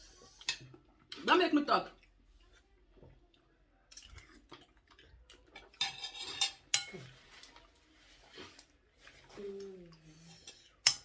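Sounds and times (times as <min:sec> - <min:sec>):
spoon scraping a bowl: 0:05.8 - 0:07.5, 0:10.1 - 0:11.0.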